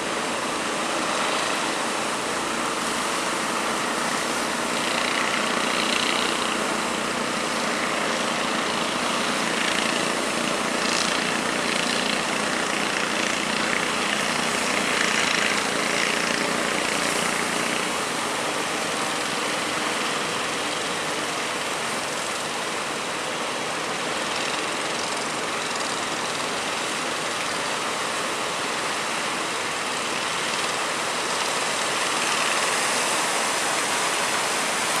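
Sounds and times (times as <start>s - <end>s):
boat engine drone: 0.0s - 35.0s
sea water rushing: 26.6s - 35.0s.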